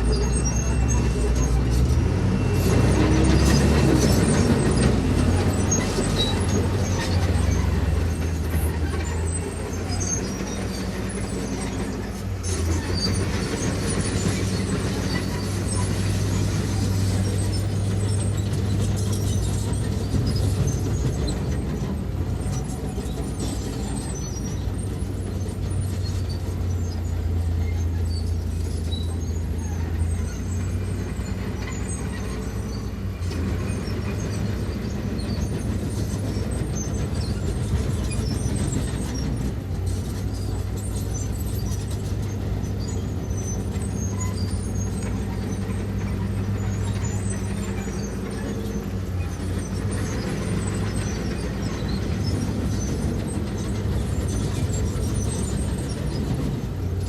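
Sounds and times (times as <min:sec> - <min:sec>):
heavy machinery diesel engine: 0:00.0 - 0:57.0.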